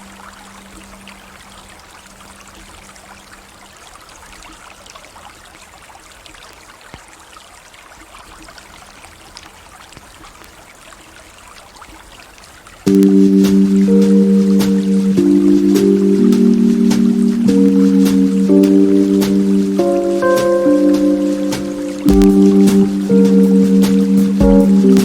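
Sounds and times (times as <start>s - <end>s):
river water flowing: 0.0s - 25.0s
water trickles and splashes: 0.0s - 25.0s
music with low notes: 12.9s - 25.0s.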